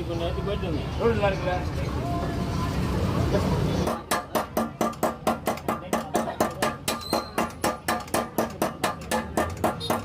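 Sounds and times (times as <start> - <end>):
hammer striking sheet metal: 3.9 - 10.0.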